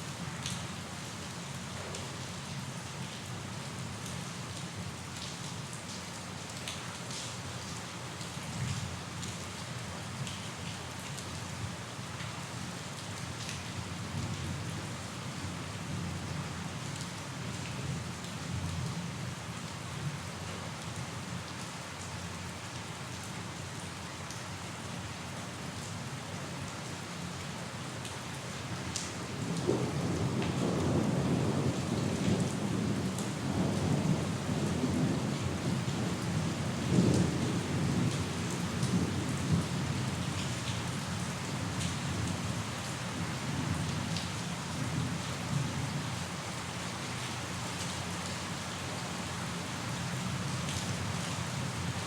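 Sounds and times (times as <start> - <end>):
steady rain falling: 0.0 - 52.0.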